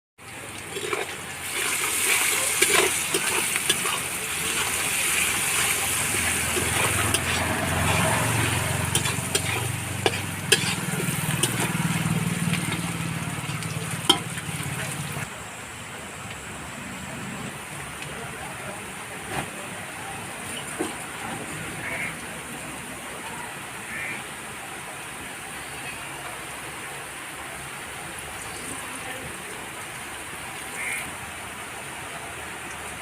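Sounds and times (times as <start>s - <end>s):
stirring clicks: 0.2s - 8.1s, 8.9s - 15.2s
food sizzling in a pan: 0.4s - 15.3s.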